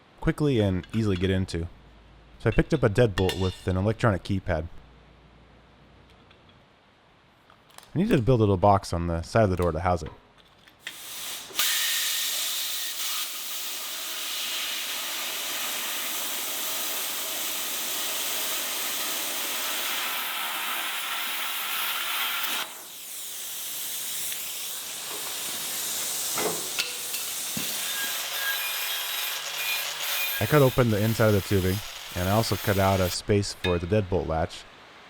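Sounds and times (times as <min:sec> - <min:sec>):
metalworking tool hissing: 0:10.8 - 0:33.2.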